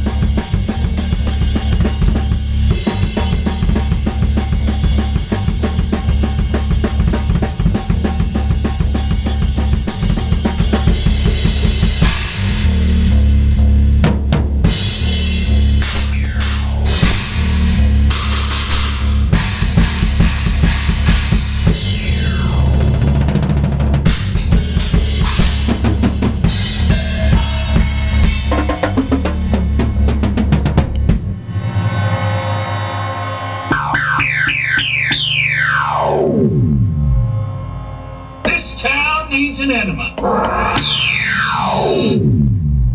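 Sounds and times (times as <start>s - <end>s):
fast drum kit playing: 0.0s - 32.4s, 33.6s - 35.5s, 38.4s - 41.1s
cymbal crashes: 14.7s - 23.0s, 24.1s - 35.2s
electronic falling sweeps: 40.2s - 42.8s.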